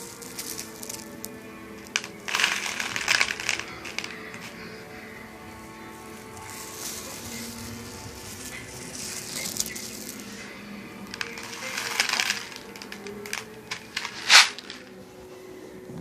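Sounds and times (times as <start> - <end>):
sharp cracks and crackling: 0.0 - 4.9, 6.2 - 15.0
loud crack: 1.9 - 4.6, 11.0 - 14.9.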